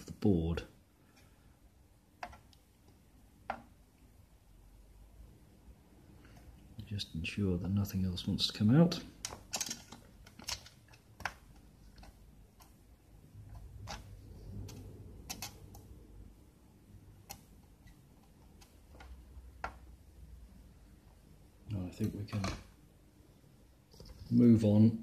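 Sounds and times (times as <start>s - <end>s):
small tools clicking and tapping: 9.2s - 12.8s.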